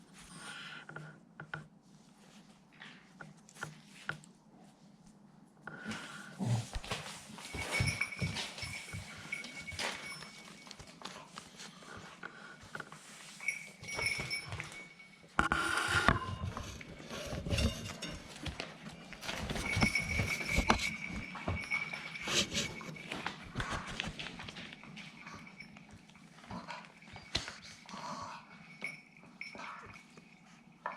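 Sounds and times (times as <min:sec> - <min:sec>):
paws scrabbling and knocks: 0:06.0 - 0:15.2, 0:16.4 - 0:30.3.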